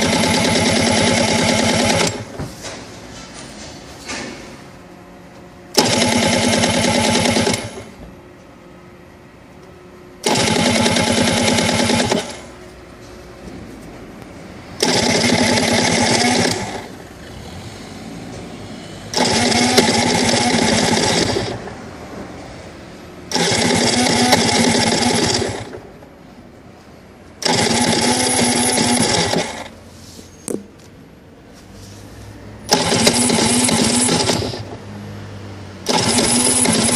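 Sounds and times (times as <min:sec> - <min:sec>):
two-stroke motorcycle engine: 0:00.0 - 0:02.4, 0:05.7 - 0:07.9, 0:10.2 - 0:12.5, 0:14.8 - 0:21.8, 0:23.3 - 0:25.9, 0:27.4 - 0:29.8, 0:32.7 - 0:35.0, 0:35.8 - 0:36.9.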